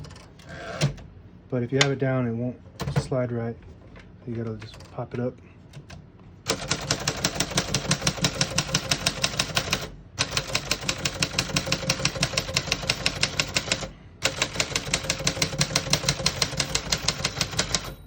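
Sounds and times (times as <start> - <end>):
typewriter keys clacking: 6.5 - 18.0.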